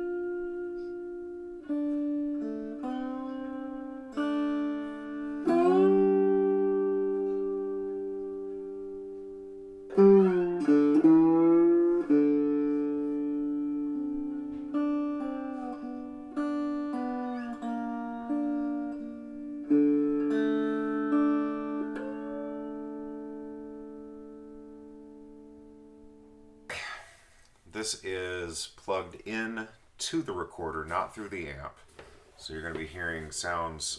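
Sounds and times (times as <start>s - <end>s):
amplified cigar box guitar: 0.0s - 26.8s.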